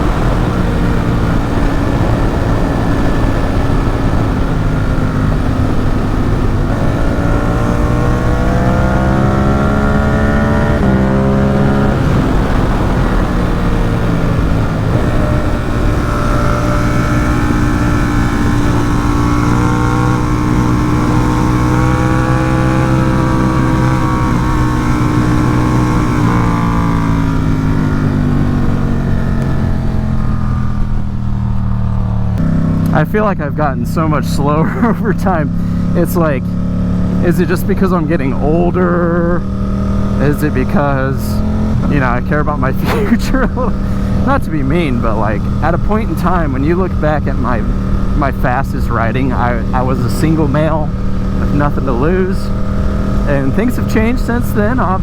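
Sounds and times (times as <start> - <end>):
wind rush: 0.0 - 33.0
motorcycle engine revving: 0.0 - 55.0.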